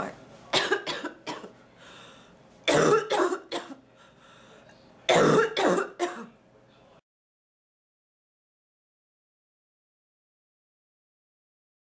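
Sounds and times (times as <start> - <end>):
woman coughing: 0.6 - 1.5, 2.7 - 3.8, 5.1 - 6.3.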